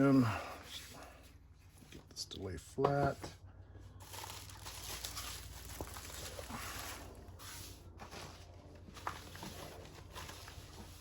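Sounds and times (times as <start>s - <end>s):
canvas crinkling: 4.0s - 7.2s.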